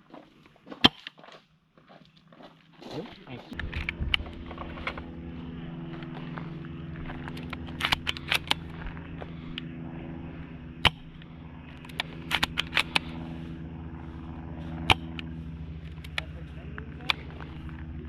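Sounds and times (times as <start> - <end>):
rifle bolt clicking: 7.4 - 8.6, 11.8 - 13.0.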